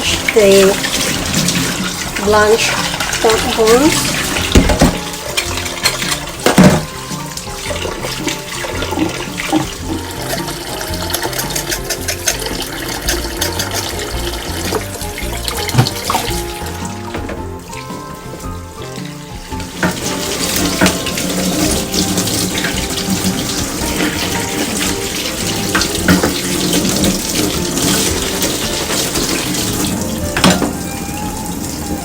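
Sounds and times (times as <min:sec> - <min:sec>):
tap running water into sink: 0:00.0 - 0:32.0
sharp knocks: 0:04.4 - 0:05.2.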